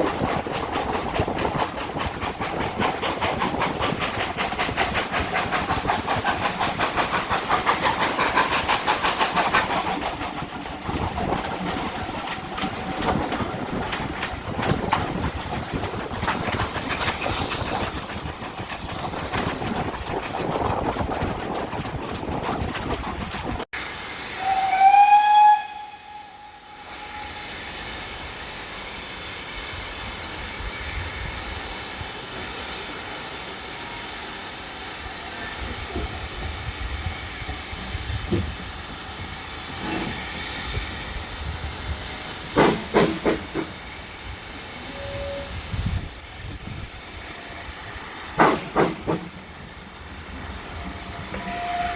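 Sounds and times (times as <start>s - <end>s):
steam locomotive exhaust beats: 0.0s - 51.9s
steam whistle blast: 24.3s - 27.7s, 44.8s - 45.6s, 51.4s - 51.9s.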